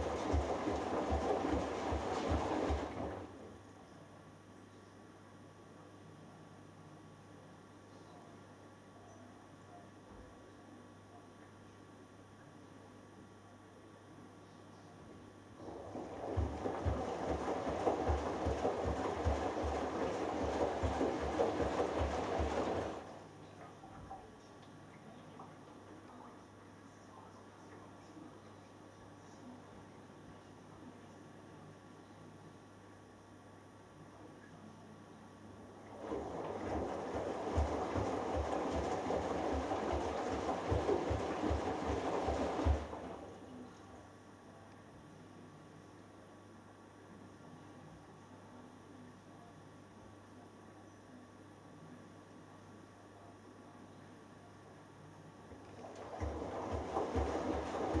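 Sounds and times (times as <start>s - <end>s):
low thuds of laundry: 0.0s - 3.3s, 15.6s - 23.1s, 35.9s - 43.4s, 55.6s - 58.0s
water sloshing: 0.0s - 3.4s, 15.6s - 23.2s, 35.8s - 43.4s, 55.6s - 58.0s
washing machine drum turning: 35.9s - 43.3s, 55.7s - 58.0s.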